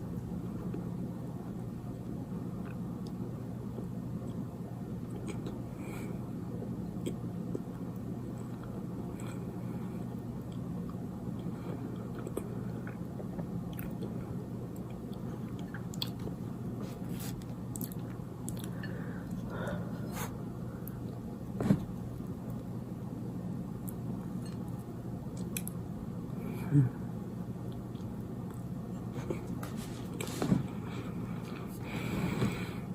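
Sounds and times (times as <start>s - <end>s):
steady low hum: 0.0s - 32.9s.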